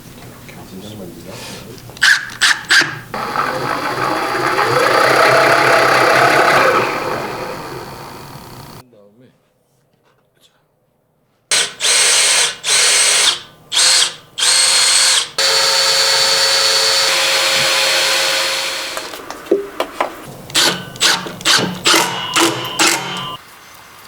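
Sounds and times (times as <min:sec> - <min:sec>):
electric drill: 0:02.0 - 0:08.8, 0:11.5 - 0:19.3, 0:20.4 - 0:23.4
sharp clicks and knocks: 0:18.9 - 0:23.4.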